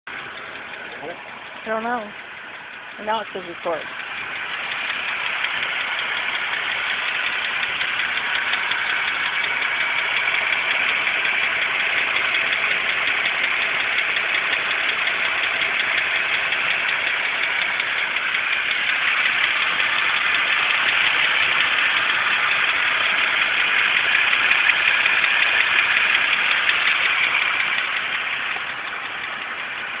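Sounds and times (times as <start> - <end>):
car engine running: 0.0 - 30.0
fast steady engine ticking: 0.0 - 30.0.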